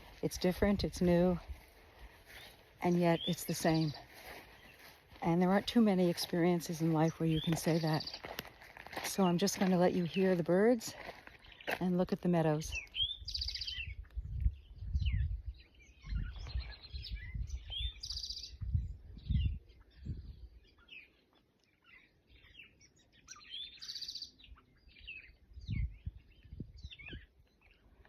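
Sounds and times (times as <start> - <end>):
wild birds singing and calling: 0.0 - 28.0.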